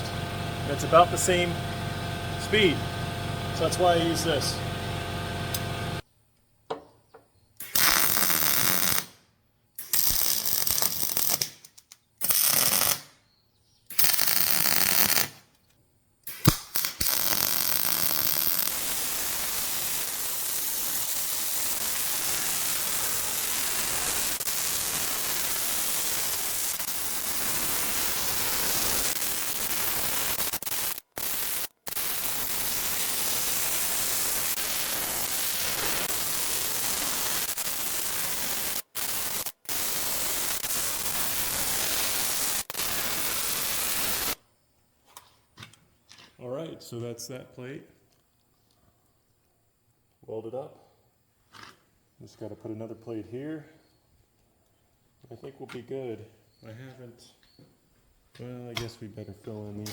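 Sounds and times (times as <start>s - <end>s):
arc welding crackling hiss: 7.6s - 9.2s, 9.8s - 11.6s, 12.2s - 13.0s, 14.0s - 15.4s, 16.3s - 44.4s.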